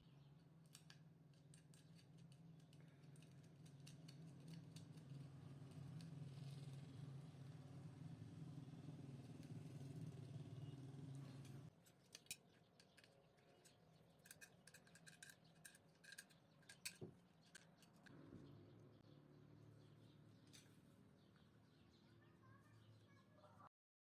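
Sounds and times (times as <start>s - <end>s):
metal parts and tools clicking: 0.6s - 6.1s, 11.4s - 18.1s.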